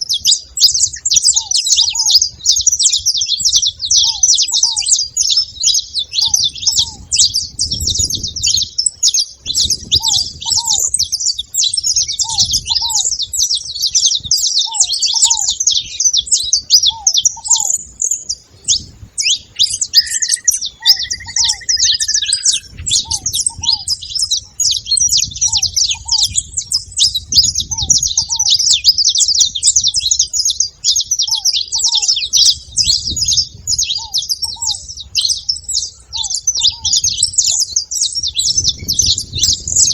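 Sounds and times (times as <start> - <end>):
finches chirping and chattering: 0.0 - 39.9
long falling whistle: 19.9 - 22.6
low two-note bird call: 19.9 - 23.2.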